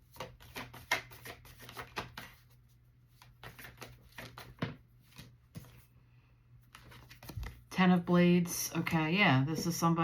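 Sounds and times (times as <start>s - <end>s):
cards slapping on table: 0.1s - 2.4s, 3.3s - 5.8s.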